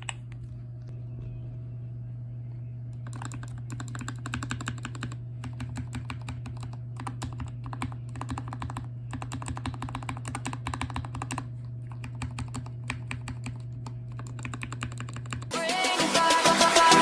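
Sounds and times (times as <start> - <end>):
low hum: 0.0 - 14.3
mechanical keyboard typing: 3.0 - 15.5.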